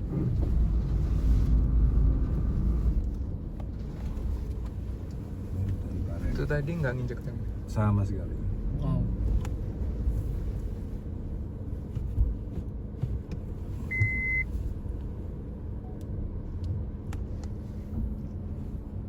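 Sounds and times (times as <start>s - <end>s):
low engine rumble: 0.0s - 19.0s
short beep: 13.9s - 14.5s.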